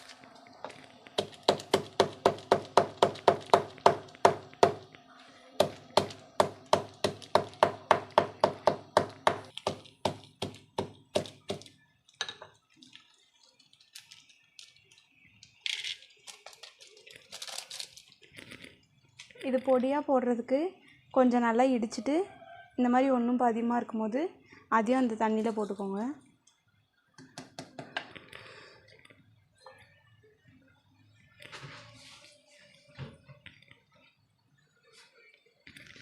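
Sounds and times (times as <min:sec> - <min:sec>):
pestle pounding in a mortar: 0:01.2 - 0:04.9, 0:05.6 - 0:11.7.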